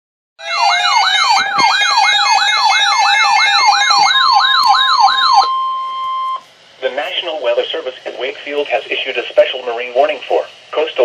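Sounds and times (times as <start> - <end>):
electronic alert siren: 0.4 - 6.4.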